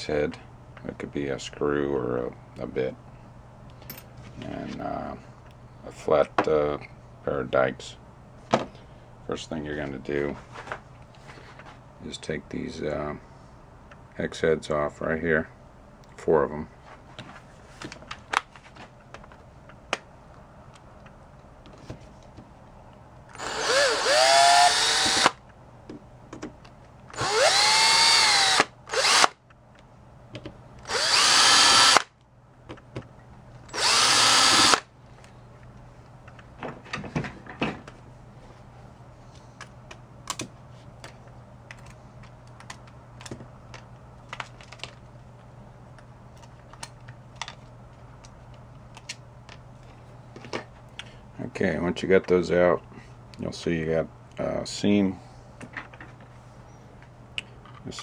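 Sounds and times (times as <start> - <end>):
power driver whirring: 23.3 - 25.4, 27.1 - 29.4, 30.8 - 32.1, 33.7 - 34.9.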